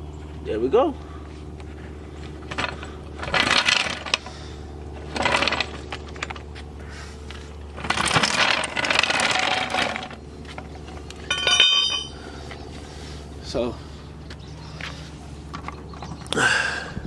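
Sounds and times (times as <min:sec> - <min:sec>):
metal tools scraping and rattling: 0:02.4 - 0:04.3, 0:05.0 - 0:06.5, 0:07.8 - 0:12.3
sharp metallic clank: 0:11.3 - 0:12.2.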